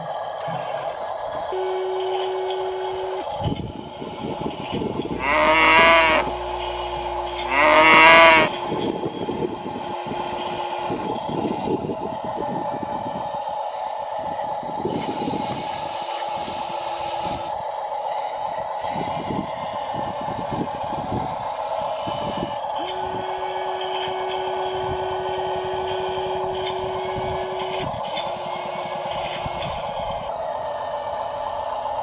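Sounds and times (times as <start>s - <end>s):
high motor whine: 0.0s - 32.0s
loud horn blasts: 1.5s - 3.6s, 4.6s - 11.2s, 22.0s - 30.1s.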